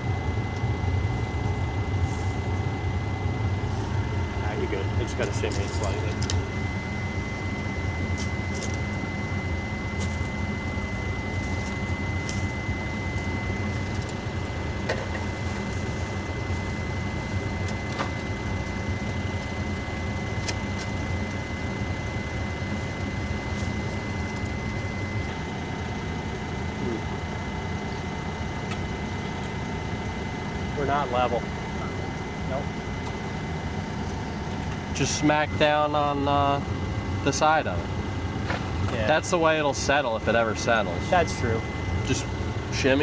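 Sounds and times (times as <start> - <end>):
heavy machine engine running: 0.0 - 43.0
thin high whine: 39.1 - 43.0.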